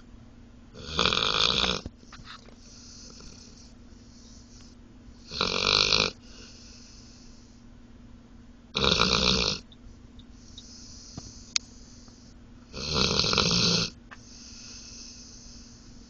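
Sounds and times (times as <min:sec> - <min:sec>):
dog snoring: 0:00.8 - 0:04.6, 0:05.2 - 0:07.4, 0:08.7 - 0:09.7, 0:12.7 - 0:15.8
soft hissing breath: 0:02.0 - 0:05.4, 0:06.1 - 0:07.7, 0:09.9 - 0:12.4, 0:14.1 - 0:16.0.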